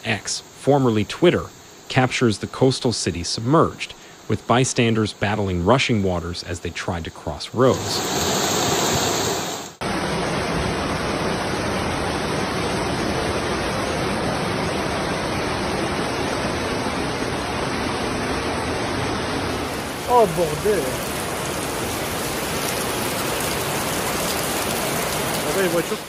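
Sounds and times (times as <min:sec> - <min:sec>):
torrential rain and rushing floodwater: 0:07.6 - 0:26.0.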